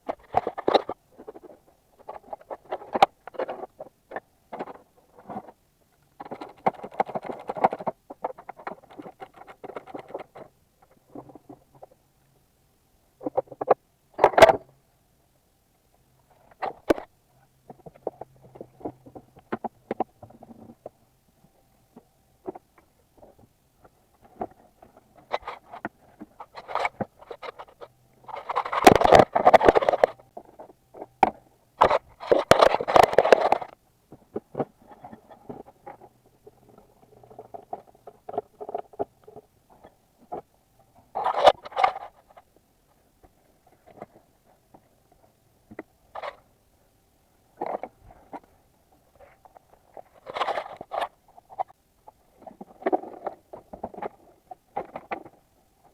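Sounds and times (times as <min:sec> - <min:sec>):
rapid clicking: 0:06.2 - 0:10.4.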